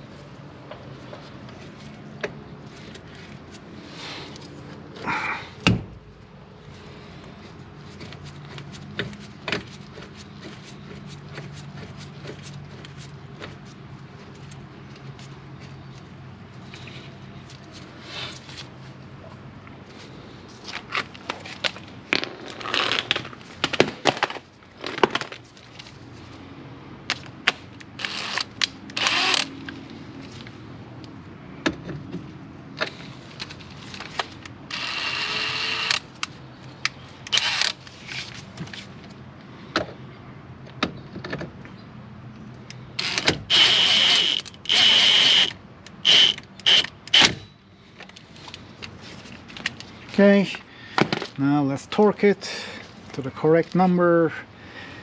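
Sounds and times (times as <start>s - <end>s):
ratchet wrench clicking: 43.0s - 47.3s.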